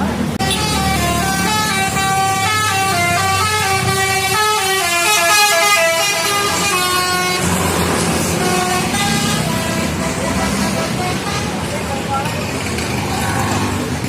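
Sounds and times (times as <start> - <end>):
musical air horn tune: 0.4 - 7.6.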